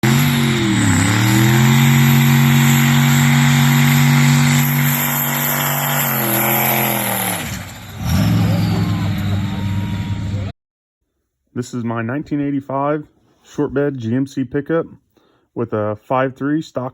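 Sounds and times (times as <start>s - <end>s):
pickup engine revving: 0.0s - 10.5s.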